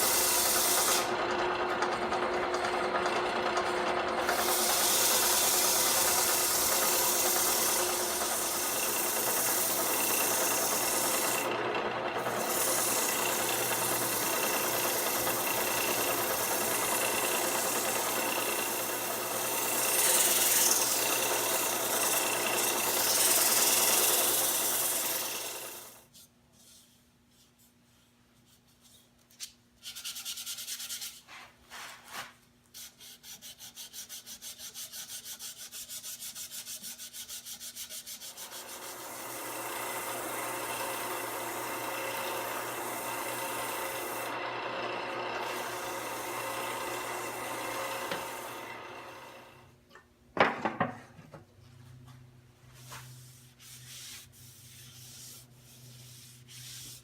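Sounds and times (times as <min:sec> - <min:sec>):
lathe motor hum: 0:00.0 - 0:26.0, 0:38.4 - 0:49.6
sandpaper scratching on spinning wood: 0:04.3 - 0:11.5, 0:12.4 - 0:25.9, 0:32.8 - 0:39.0, 0:52.8 - 0:57.0.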